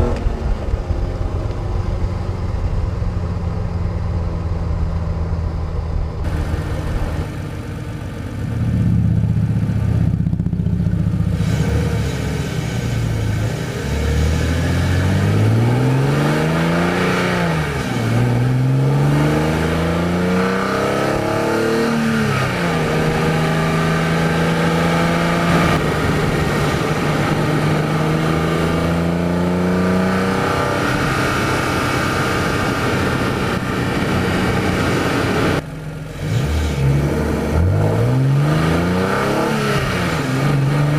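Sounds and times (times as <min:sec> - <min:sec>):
car engine revving through gears: 0:10.2 - 0:40.9.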